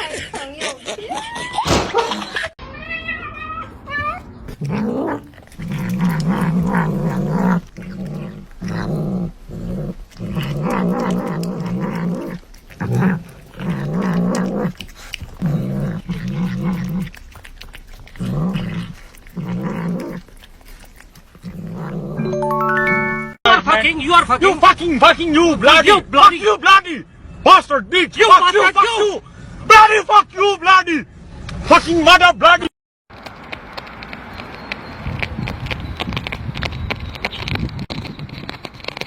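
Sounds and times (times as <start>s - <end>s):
animal growling: 4.5s - 22.3s.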